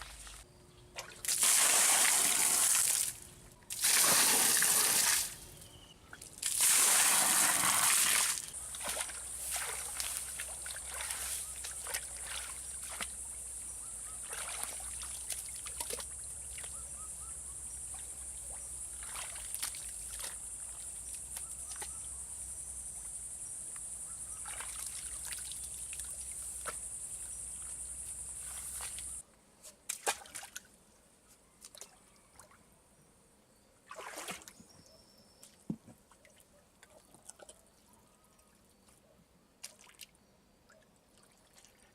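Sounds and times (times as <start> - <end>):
water splashing and trickling: 0.0 - 16.8, 17.6 - 22.1, 24.3 - 29.2, 29.9 - 30.7, 33.9 - 34.8, 39.6 - 41.9.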